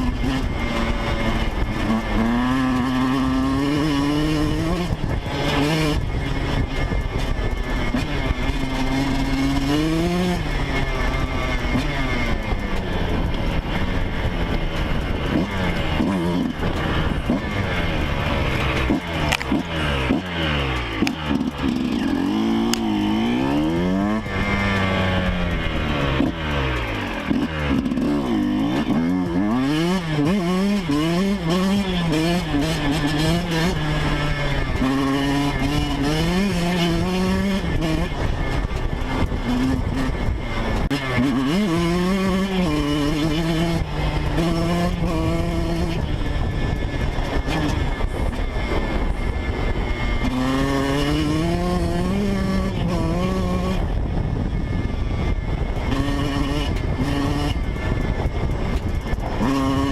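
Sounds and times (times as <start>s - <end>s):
two-stroke motorcycle engine revving: 0.0s - 59.9s.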